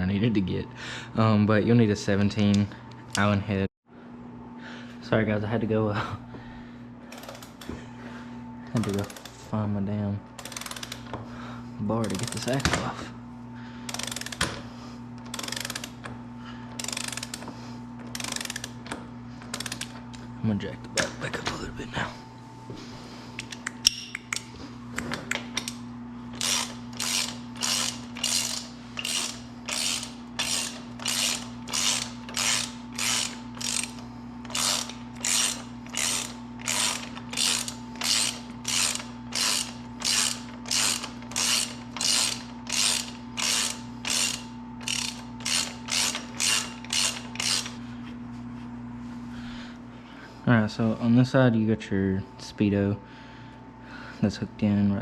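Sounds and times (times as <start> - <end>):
steady low hum: 0.0 - 55.0
ratcheting jack cranking: 8.8 - 9.4, 10.4 - 11.1, 12.0 - 12.7, 13.9 - 14.5, 15.2 - 16.1, 16.7 - 20.0, 25.6 - 47.8.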